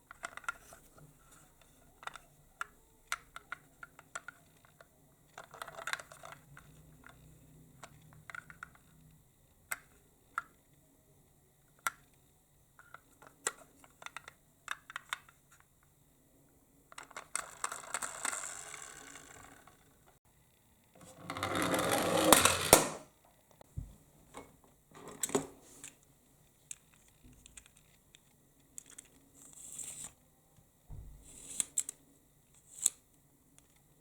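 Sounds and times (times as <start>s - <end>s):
toy cars clicking and tapping: 1.8s - 9.1s, 16.9s - 20.0s, 26.6s - 30.1s.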